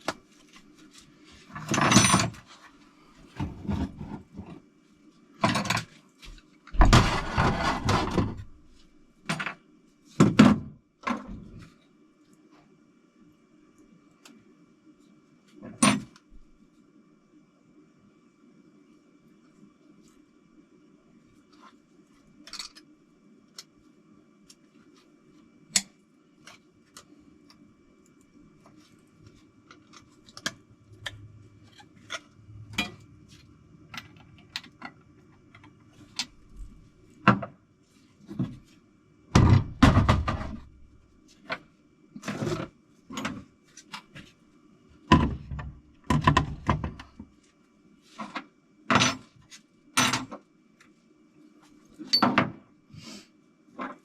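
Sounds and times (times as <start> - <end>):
steady low hum: 23.0 - 48.1.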